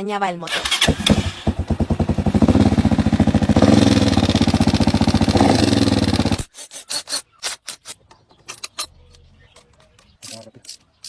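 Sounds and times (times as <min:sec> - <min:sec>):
motorcycle engine running: 0:00.6 - 0:06.5.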